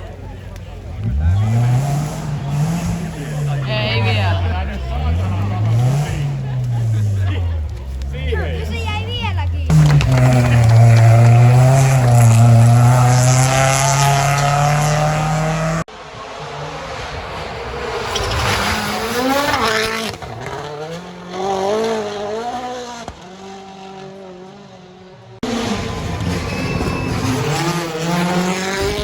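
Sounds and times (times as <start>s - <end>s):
rally car engines revving: 0.0s - 29.0s.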